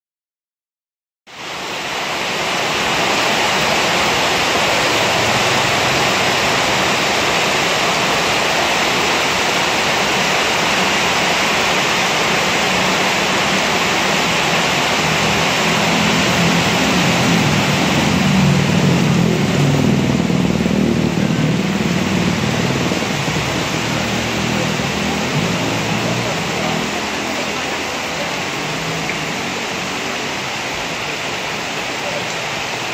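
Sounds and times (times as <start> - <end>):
heavy rain pouring: 1.3 - 32.9
low rumble: 15.1 - 26.8.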